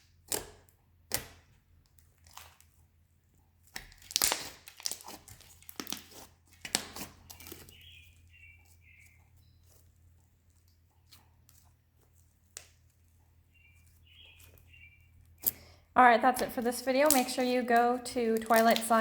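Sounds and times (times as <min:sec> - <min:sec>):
slime squishing pops and clicks: 0:03.8 - 0:05.1.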